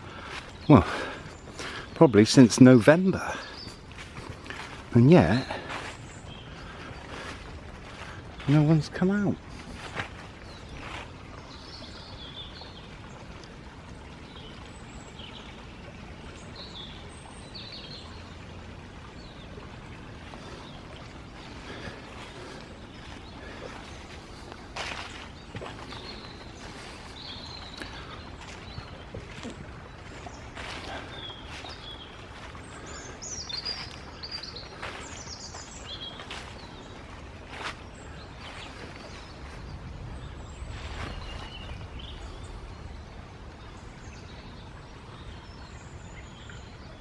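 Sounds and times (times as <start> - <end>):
small birds chirping: 0.0 - 18.4, 19.1 - 47.0
footsteps: 3.4 - 6.0, 21.8 - 37.8.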